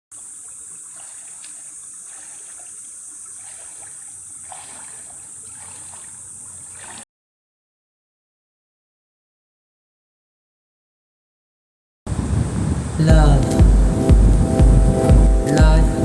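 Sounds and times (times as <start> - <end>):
faint scattered ticks: 0.2 - 7.0
steady high-pitched hiss: 12.1 - 16.0.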